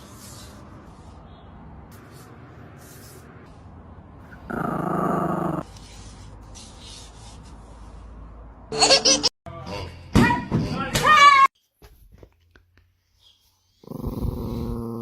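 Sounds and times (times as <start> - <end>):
dog growling: 4.3 - 5.6, 13.8 - 15.0.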